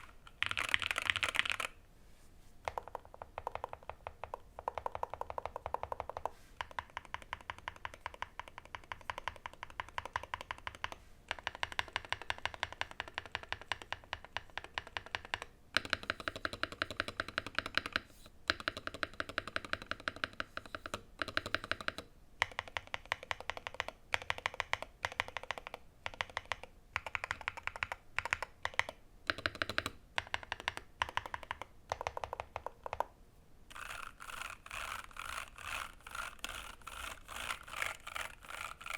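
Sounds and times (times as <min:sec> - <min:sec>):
fast typing on a keyboard: 0:00.0 - 0:01.8, 0:02.6 - 0:33.1, 0:33.7 - 0:38.9.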